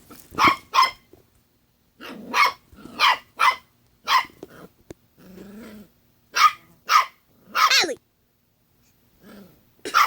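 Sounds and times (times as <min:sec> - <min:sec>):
puppy barking: 0:00.4 - 0:01.1, 0:02.0 - 0:04.4, 0:06.3 - 0:08.0.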